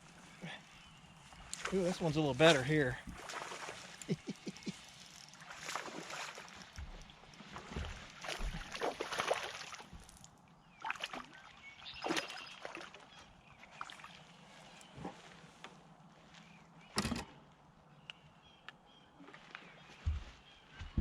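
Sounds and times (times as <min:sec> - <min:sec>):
fish splashing: 0:01.5 - 0:14.4.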